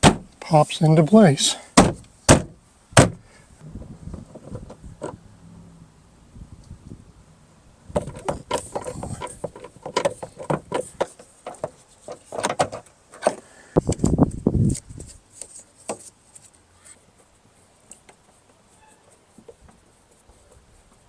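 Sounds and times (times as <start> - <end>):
dull thump: 0.0 - 0.3, 1.8 - 5.3, 7.9 - 11.8.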